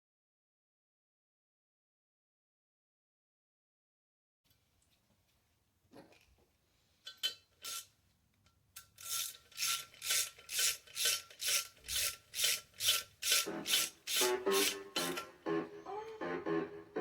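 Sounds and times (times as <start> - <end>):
hand tool rasping: 9.0 - 15.3.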